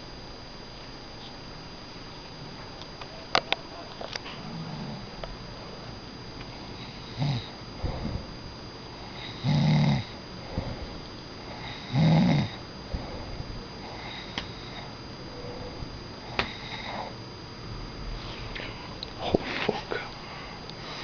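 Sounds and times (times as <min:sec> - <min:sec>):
pet snoring: 0:04.2 - 0:05.3, 0:06.6 - 0:08.2, 0:08.9 - 0:15.6, 0:16.2 - 0:17.2.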